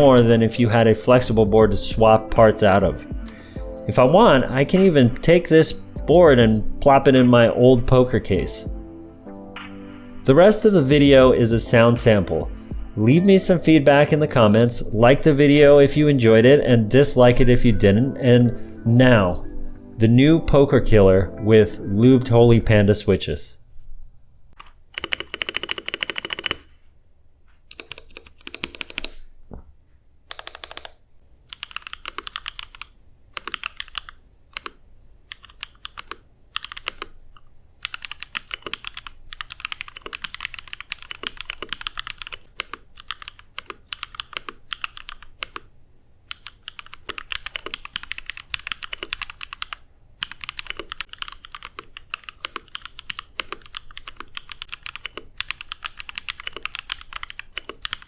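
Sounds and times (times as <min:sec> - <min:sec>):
mechanical keyboard typing: 0:24.6 - 0:26.7, 0:27.7 - 0:29.2, 0:30.3 - 0:37.2, 0:37.8 - 0:45.7, 0:46.3 - 0:58.0.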